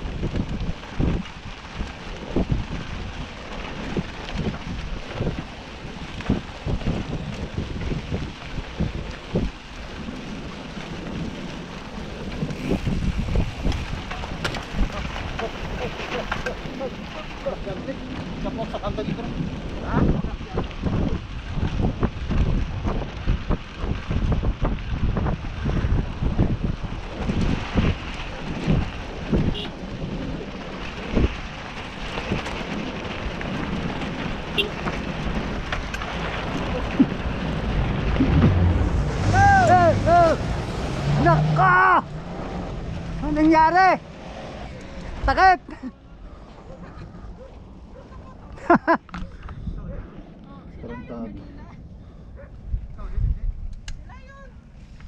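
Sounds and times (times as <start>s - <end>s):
wind buffeting microphone: 0.0s - 55.0s
low thumps: 34.7s - 43.6s.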